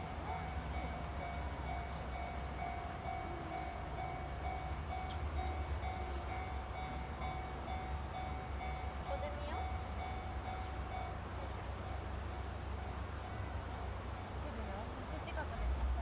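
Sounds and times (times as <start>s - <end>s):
level crossing warning bell: 0.0s - 11.4s.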